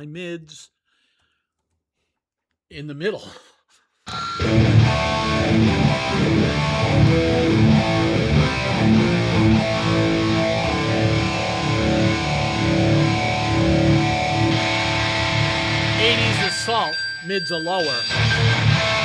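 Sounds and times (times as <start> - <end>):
electric guitar riff: 4.1 - 17.0, 18.1 - 19.0.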